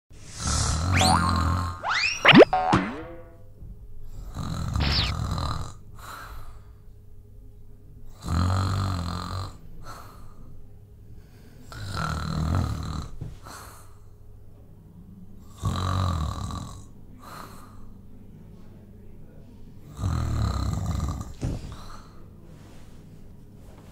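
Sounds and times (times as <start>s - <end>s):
rising whistle: 0.8s - 3.4s.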